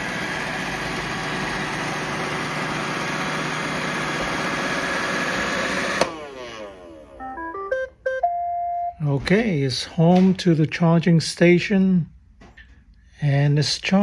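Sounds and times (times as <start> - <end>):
robot vacuum whirring: 0.0 - 7.2
vacuum shut-off click: 0.0 - 7.2.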